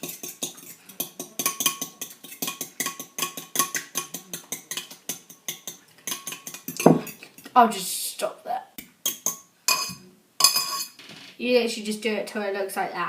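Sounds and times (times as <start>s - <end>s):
fork beating eggs in bowl: 0.0s - 7.5s.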